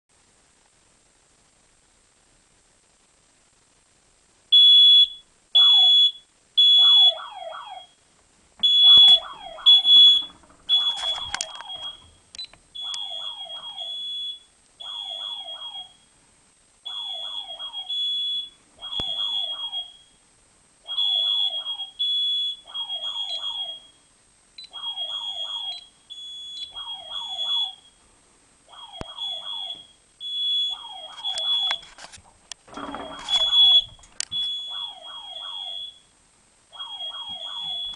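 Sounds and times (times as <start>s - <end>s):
smoke detector beeping: 8.6s - 14.5s, 20.9s - 23.9s, 24.6s - 28.0s, 29.0s - 31.8s, 32.8s - 36.1s, 36.8s - 37.9s.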